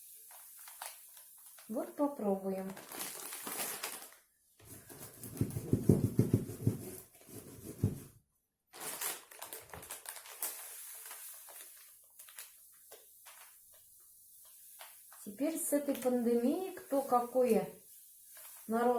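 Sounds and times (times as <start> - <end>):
sugar granules pattering on pine cones: 0.0 - 4.1, 9.0 - 18.9.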